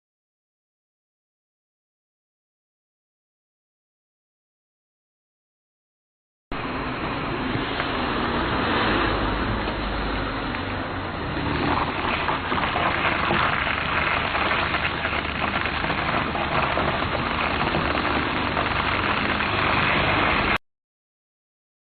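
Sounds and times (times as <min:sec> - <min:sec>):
low engine hum: 0:06.5 - 0:20.6
tyres crunching on gravel: 0:11.4 - 0:20.6.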